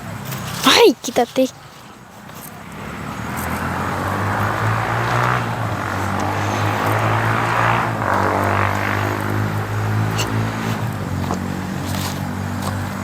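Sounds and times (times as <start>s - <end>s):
engine running with low hum: 2.7s - 13.0s.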